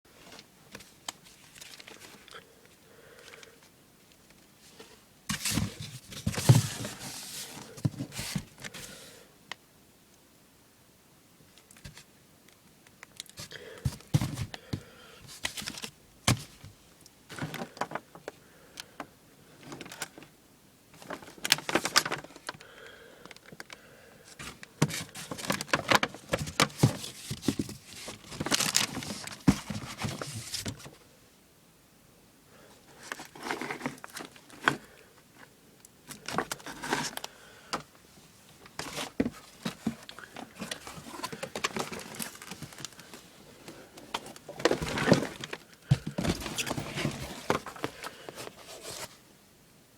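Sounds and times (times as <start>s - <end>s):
packaging rustling and crinkling: 0.2s - 2.4s, 5.3s - 8.9s, 13.2s - 16.7s, 21.0s - 22.6s, 23.3s - 31.0s, 32.9s - 37.8s, 38.6s - 49.2s.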